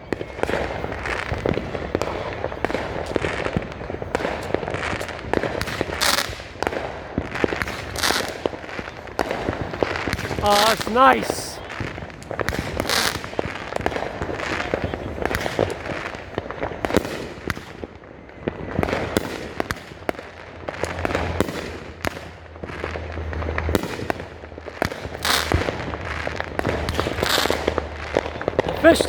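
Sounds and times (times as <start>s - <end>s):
hissing firework spread: 0.2s - 20.3s, 20.9s - 29.0s
firework aerial bursts: 10.3s - 11.6s.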